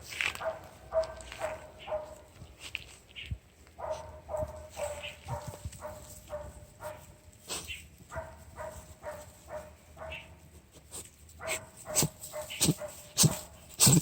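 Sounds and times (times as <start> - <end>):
puppy sneezing: 12.0 - 14.0.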